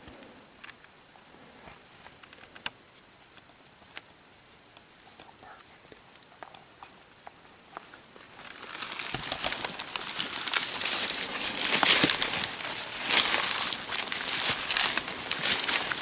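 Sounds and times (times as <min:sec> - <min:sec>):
dense rustling and crackling: 0:05.2 - 0:16.0.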